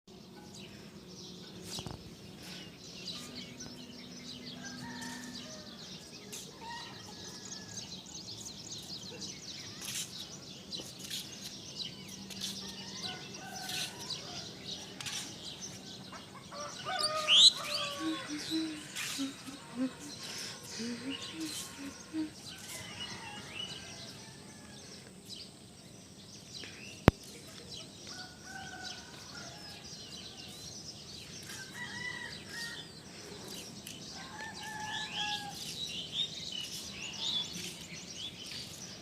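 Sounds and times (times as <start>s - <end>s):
small birds chirping: 8.3s - 23.9s.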